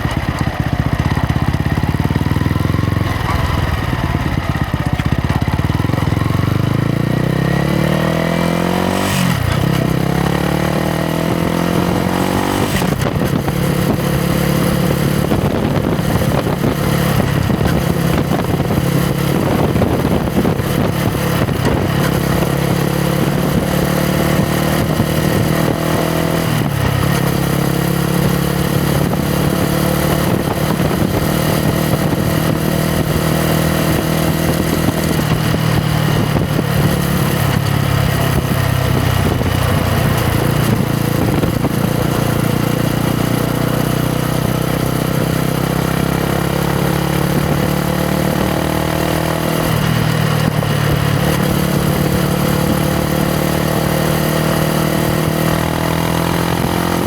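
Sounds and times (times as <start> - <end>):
motorcycle engine running: 0.0 - 57.0.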